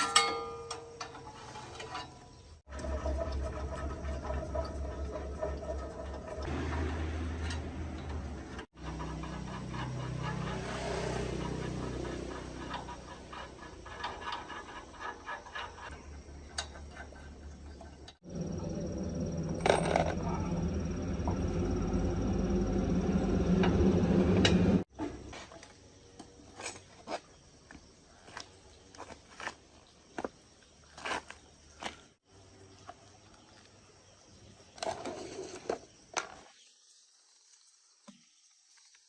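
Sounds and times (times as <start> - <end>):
steady machine hum: 18.2 - 24.9.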